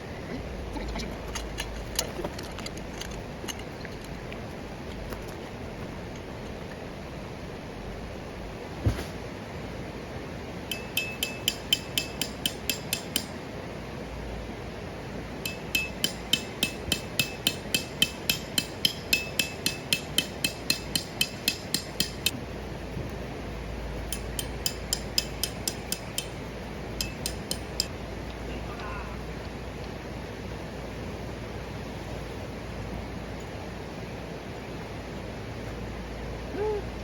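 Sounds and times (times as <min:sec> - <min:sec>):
hammer striking metal tent peg: 0:10.7 - 0:13.4, 0:15.4 - 0:22.4, 0:24.1 - 0:26.4, 0:27.0 - 0:27.9.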